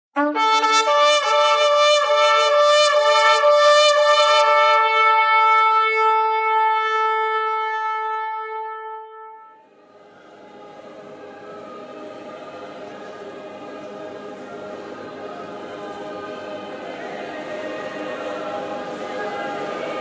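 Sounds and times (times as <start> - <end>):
shofar blasts: 0.2 - 9.6
faint background noise: 9.4 - 20.0.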